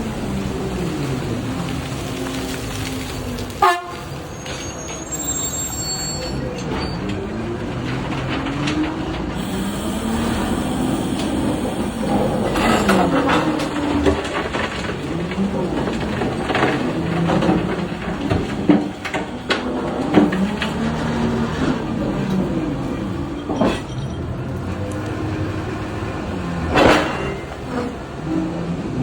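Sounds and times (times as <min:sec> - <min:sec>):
heavy machinery rumbling: 0:07.6 - 0:23.9.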